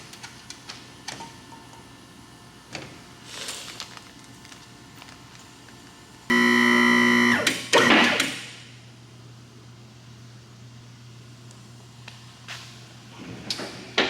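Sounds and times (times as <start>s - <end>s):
steady low hum: 5.8s - 14.0s
distorted guitar-like chord: 6.3s - 7.4s.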